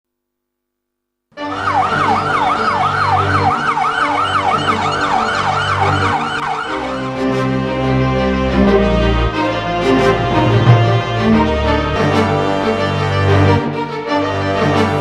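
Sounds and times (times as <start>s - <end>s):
electronic siren sweeping: 1.4s - 7.6s
background music: 1.4s - 15.0s.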